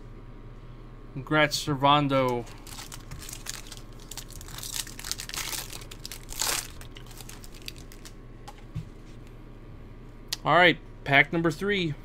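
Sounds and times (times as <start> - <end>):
wrapper crinkling and rustling: 2.4 - 8.2.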